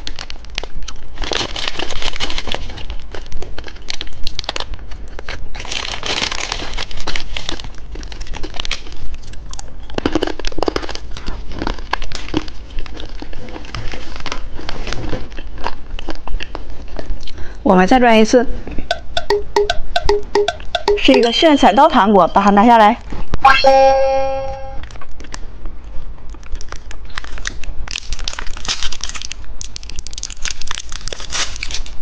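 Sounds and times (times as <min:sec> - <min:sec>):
plastic packaging tearing: 0:00.0 - 0:16.2, 0:26.4 - 0:32.0
plastic candy wrapper crinkling: 0:00.0 - 0:17.4, 0:26.3 - 0:32.0.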